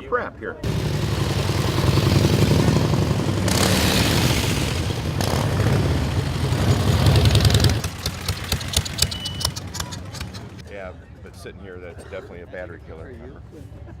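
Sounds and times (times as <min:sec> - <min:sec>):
motorcycle engine running: 0:00.6 - 0:10.6.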